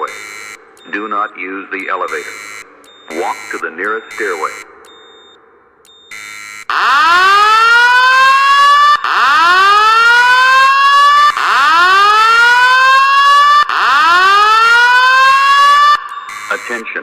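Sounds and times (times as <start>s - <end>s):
short steady alarm tone: 0.0s - 8.3s, 14.1s - 17.0s
fire alarm rising sweep tone: 0.0s - 17.0s.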